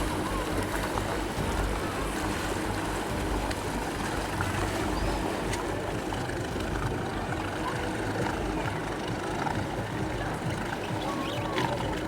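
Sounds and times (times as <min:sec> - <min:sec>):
motorboat engine: 0:00.0 - 0:12.0
rushing water: 0:00.0 - 0:12.0.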